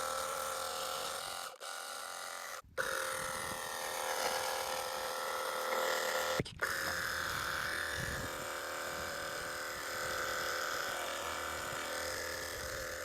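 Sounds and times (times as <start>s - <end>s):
pressure washer motor whine: 3.1s - 12.9s.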